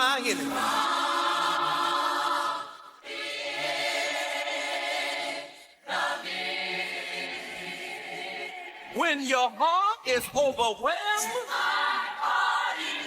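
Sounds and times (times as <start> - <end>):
choir singing sustained chords: 0.0 - 9.0.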